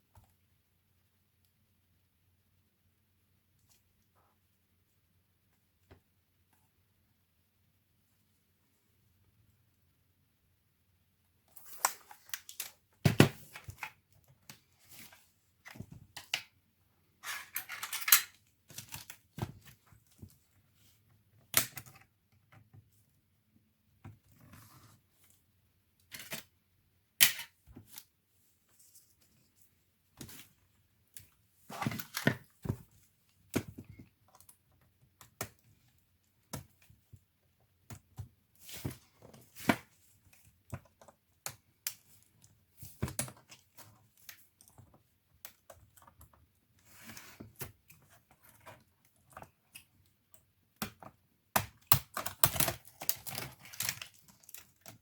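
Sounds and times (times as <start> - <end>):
tools clicking on laptop parts: 50.8 - 55.0.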